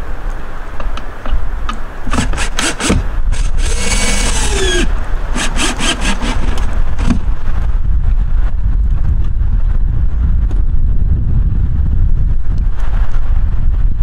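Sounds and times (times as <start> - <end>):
knocks and scraping on wood: 1.3 - 7.4
low rumble: 2.4 - 14.0.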